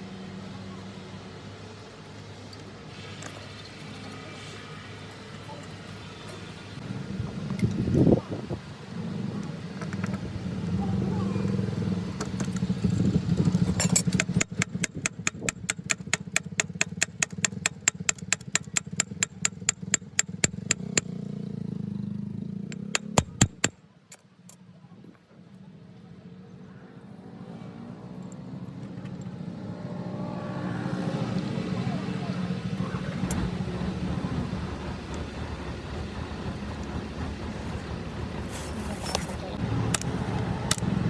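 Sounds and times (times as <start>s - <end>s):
sharp rhythmic clicks: 14.1s - 21.2s, 22.7s - 23.7s.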